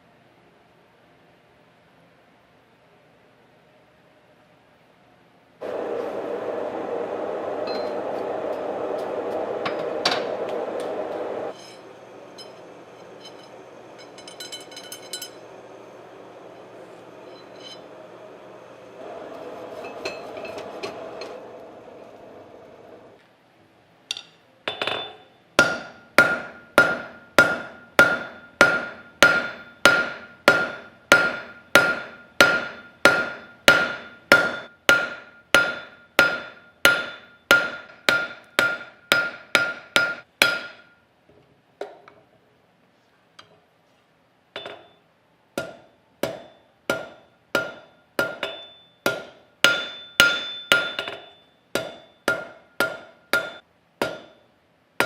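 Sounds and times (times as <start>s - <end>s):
hammer striking steel on anvil: 9.5s - 15.5s, 24.1s - 41.0s, 44.6s - 45.0s, 45.6s - 54.5s.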